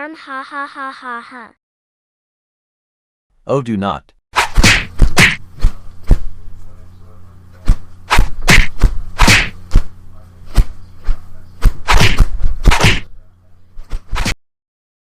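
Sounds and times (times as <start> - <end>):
cartoon whacks and slaps: 4.4 - 6.2, 7.6 - 9.9, 11.6 - 13.1, 13.9 - 14.4
faint low hum: 5.0 - 14.0.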